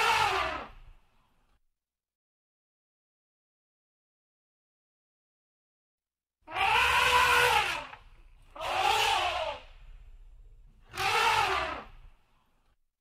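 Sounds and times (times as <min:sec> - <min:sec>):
animal calling harshly: 0:00.0 - 0:00.8, 0:06.5 - 0:09.8, 0:10.8 - 0:12.0.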